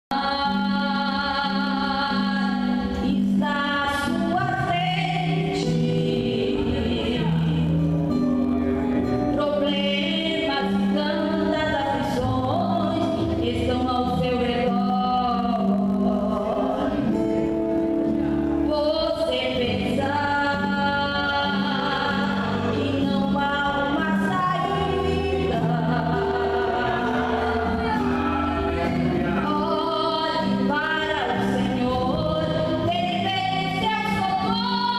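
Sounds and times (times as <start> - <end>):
musical backing with low bass: 0.1 - 34.9
vocal group singing gospel: 19.1 - 34.9.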